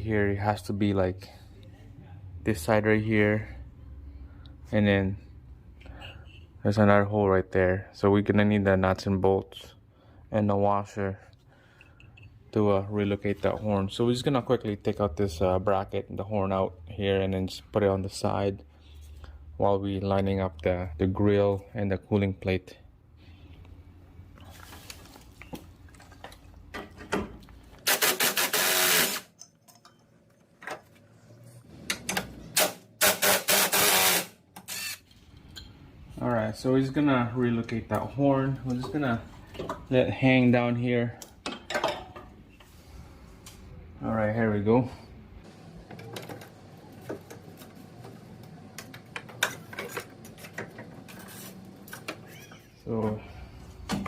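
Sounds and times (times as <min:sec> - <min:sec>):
rapid mechanical clicking of tool: 0:27.8 - 0:29.3, 0:32.6 - 0:35.0.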